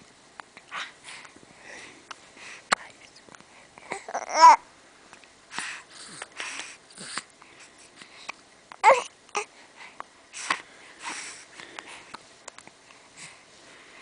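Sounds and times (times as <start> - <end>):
baby fussy cries: 3.9 - 4.6, 8.8 - 9.1.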